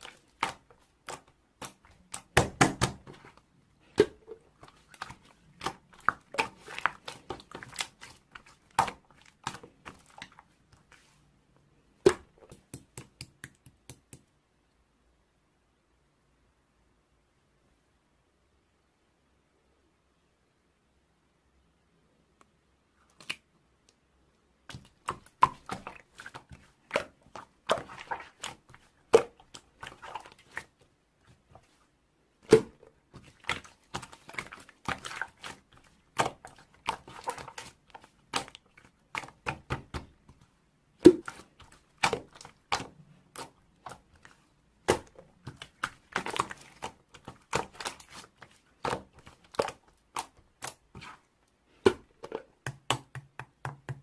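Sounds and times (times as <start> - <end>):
sticky slime pops and crackles: 0.3 - 3.1.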